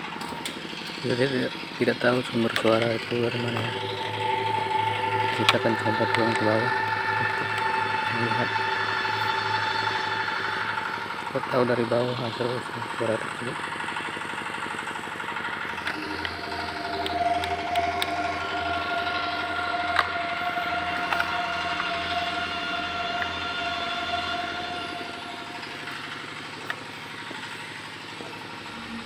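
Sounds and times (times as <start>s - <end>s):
low pulsing drone: 0.0s - 29.0s
machinery whine: 0.0s - 29.0s.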